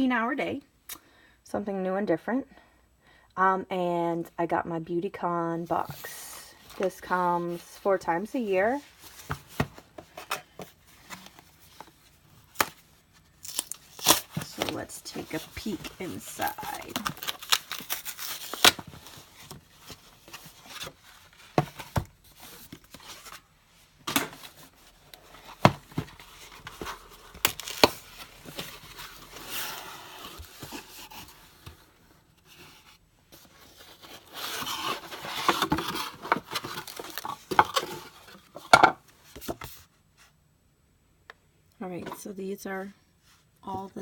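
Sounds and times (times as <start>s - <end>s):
packaging crinkling and rustling: 8.9s - 23.5s, 24.2s - 38.8s.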